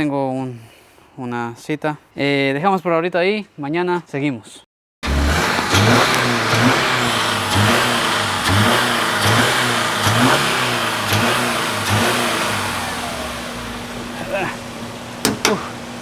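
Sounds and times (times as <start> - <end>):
car engine running: 5.0 - 16.0.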